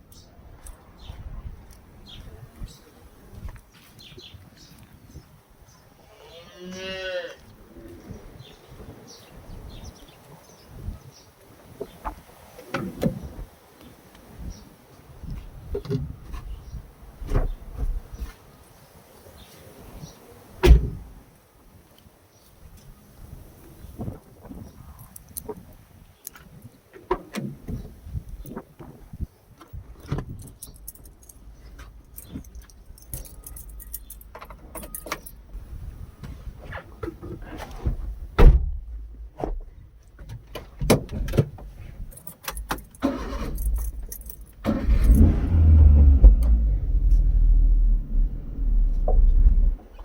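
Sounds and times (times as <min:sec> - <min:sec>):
keys jangling: 0:30.2 - 0:35.4, 0:42.0 - 0:44.6
car engine rumble: 0:41.6 - 0:50.0.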